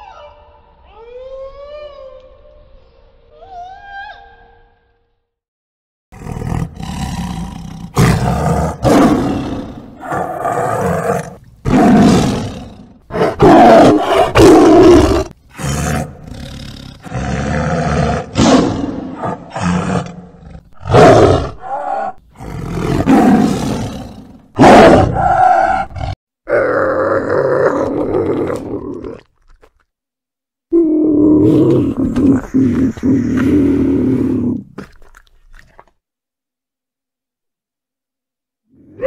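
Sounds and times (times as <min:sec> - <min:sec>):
tiger roaring: 0:06.2 - 0:29.3, 0:30.7 - 0:34.8.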